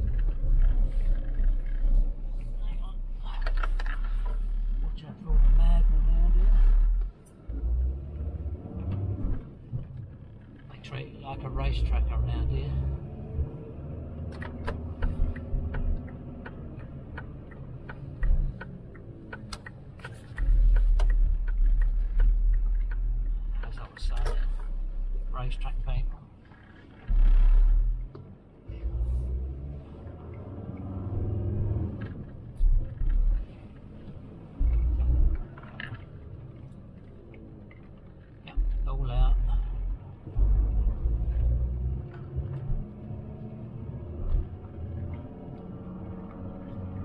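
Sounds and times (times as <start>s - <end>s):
low road rumble: 0.0s - 47.0s
van engine running: 0.0s - 47.0s
rattling clicks in cabin: 14.2s - 24.8s.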